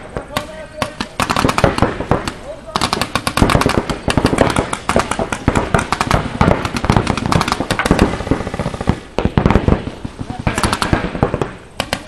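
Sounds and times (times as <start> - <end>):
paintball markers firing: 0.1 - 12.0.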